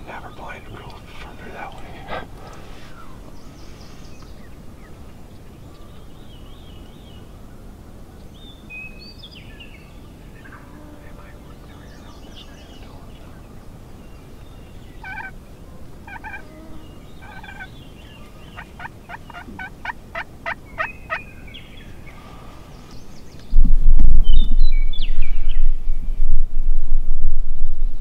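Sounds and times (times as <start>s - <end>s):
wild turkeys calling: 10.4s - 22.6s.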